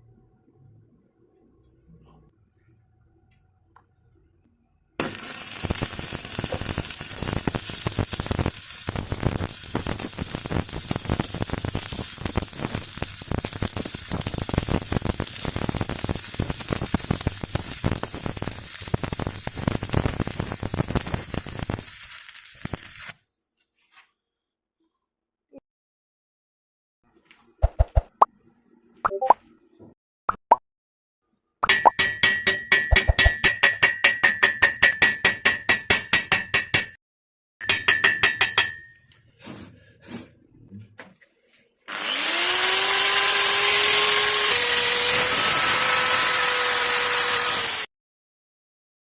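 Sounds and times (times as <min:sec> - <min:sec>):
welding arc crackling and sizzling: 0:05.0 - 0:23.2.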